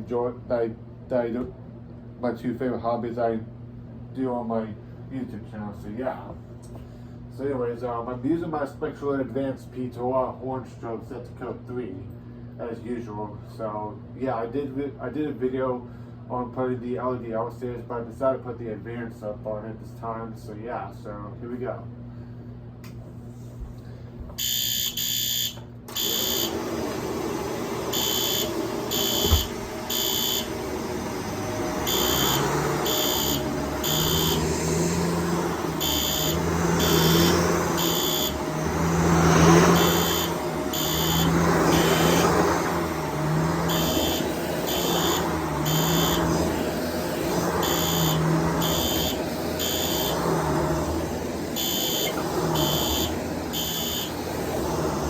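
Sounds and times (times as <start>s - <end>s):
upright vacuum running: 22.9s - 55.0s
fire alarm horn blasts: 24.4s - 26.6s, 27.9s - 54.8s
thump: 29.2s - 29.5s.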